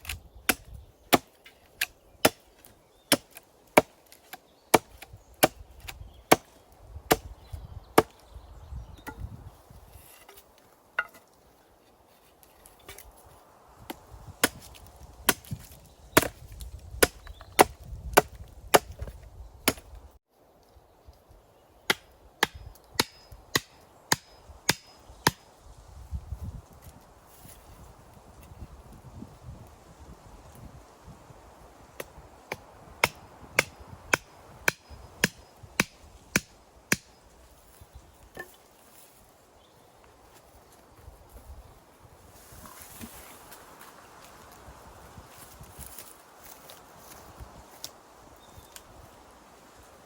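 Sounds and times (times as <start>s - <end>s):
axe chopping wood: 0.0s - 7.3s, 13.9s - 19.9s, 21.9s - 25.4s, 32.0s - 37.1s.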